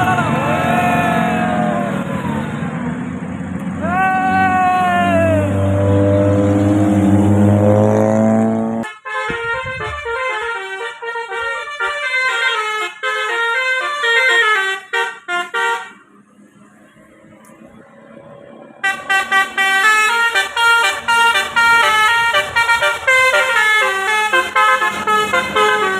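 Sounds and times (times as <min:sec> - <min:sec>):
bus engine drone rising: 0:00.0 - 0:08.8, 0:15.8 - 0:25.9
musical air horn melody: 0:08.6 - 0:16.0, 0:18.8 - 0:25.9.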